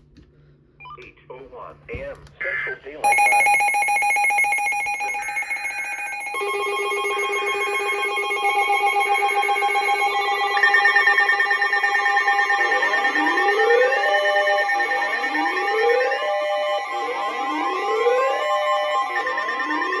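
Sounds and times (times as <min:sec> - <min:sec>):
steady electronic tones: 0:03.0 - 0:20.0
warbling data bursts: 0:03.1 - 0:20.0
rising synthesizer sweeps: 0:04.7 - 0:19.1.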